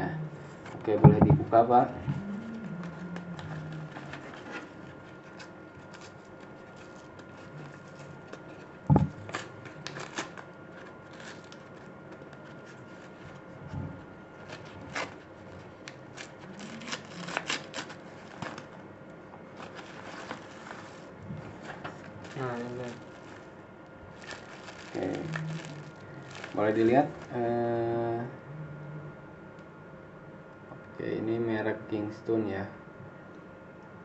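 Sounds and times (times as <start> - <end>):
packaging clicks and crackles: 9.3 - 13.1, 14.4 - 18.8, 24.2 - 27.4.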